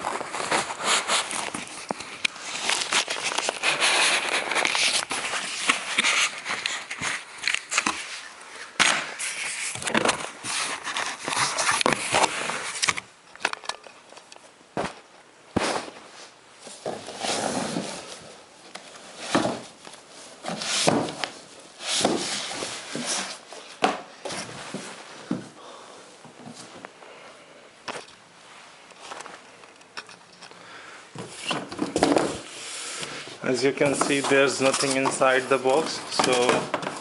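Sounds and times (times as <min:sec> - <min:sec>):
packaging crinkling: 0:00.0 - 0:13.6.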